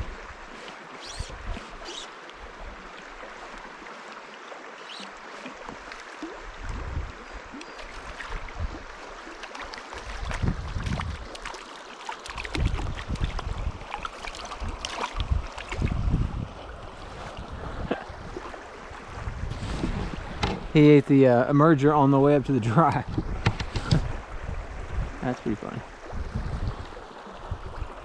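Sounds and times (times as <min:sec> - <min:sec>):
stream water flowing: 0:00.0 - 0:28.0
wind buffeting microphone: 0:06.5 - 0:07.2, 0:10.1 - 0:11.3, 0:12.5 - 0:13.9, 0:14.6 - 0:21.0, 0:22.9 - 0:25.2, 0:26.0 - 0:28.0.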